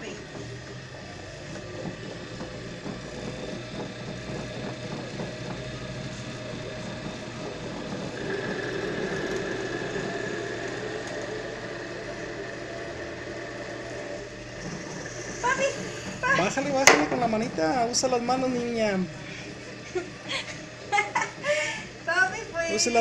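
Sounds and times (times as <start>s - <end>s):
drill press motor running: 0.0s - 22.1s
high-pitched whine: 5.8s - 17.2s.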